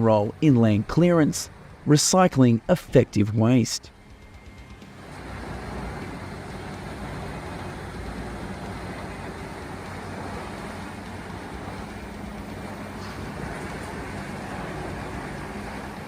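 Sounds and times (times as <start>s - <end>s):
diesel engine hum: 0.0s - 16.0s
wood chipper running: 3.9s - 16.0s.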